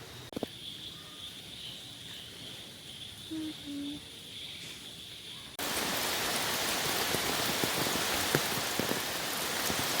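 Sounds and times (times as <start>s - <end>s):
faint insect trill: 0.4s - 5.6s
rain falling: 5.5s - 10.0s.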